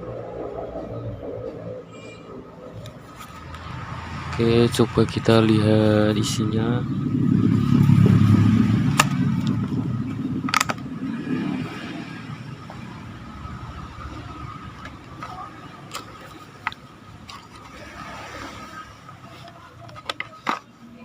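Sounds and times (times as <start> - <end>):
passing vehicle rumble: 0.0 - 21.0.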